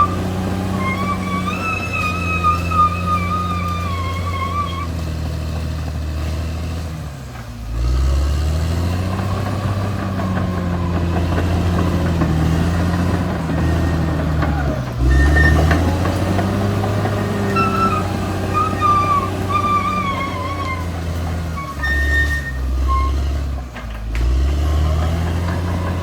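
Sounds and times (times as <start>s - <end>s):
bulldozer diesel engine under load: 0.0s - 26.0s.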